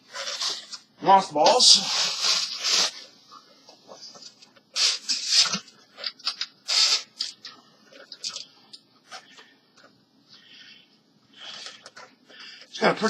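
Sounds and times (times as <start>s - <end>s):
plastic bag rustling: 0.0s - 0.9s, 1.5s - 3.1s.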